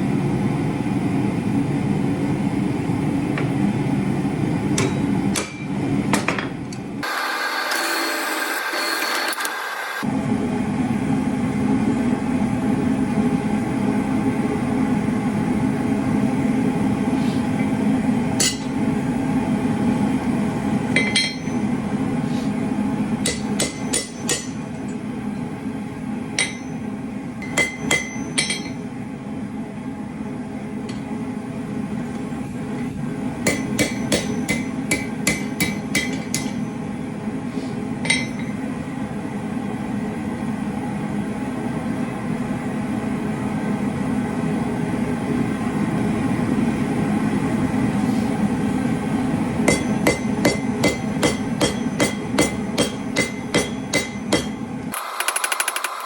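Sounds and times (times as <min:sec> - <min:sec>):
steady mechanical drone: 0:00.0 - 0:56.0
hammer striking steel on anvil: 0:04.7 - 0:06.9, 0:18.4 - 0:18.8, 0:20.9 - 0:21.7, 0:23.2 - 0:25.4, 0:26.4 - 0:28.8, 0:32.8 - 0:36.7, 0:38.0 - 0:38.6, 0:49.6 - 0:54.7.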